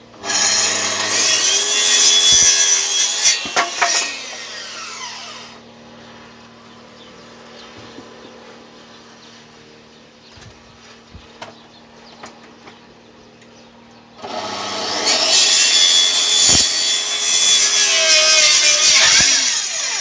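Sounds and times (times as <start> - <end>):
power saw cutting wood: 0.2 - 5.6, 14.2 - 20.0
saw motor winding down: 0.2 - 5.6, 14.2 - 20.0.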